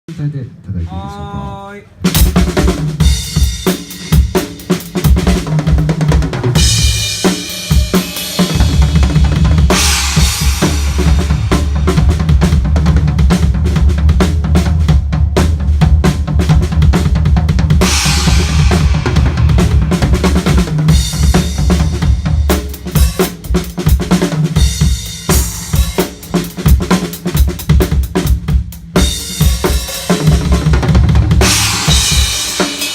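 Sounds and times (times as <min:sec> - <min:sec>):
drum kit playing: 0:00.8 - 0:32.9
cymbal crashes: 0:17.9 - 0:20.3.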